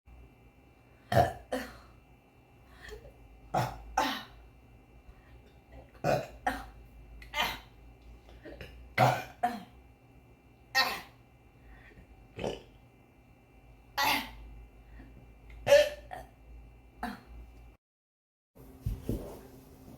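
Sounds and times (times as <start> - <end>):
woman burping: 1.1 - 1.9, 5.9 - 7.7, 17.0 - 17.4.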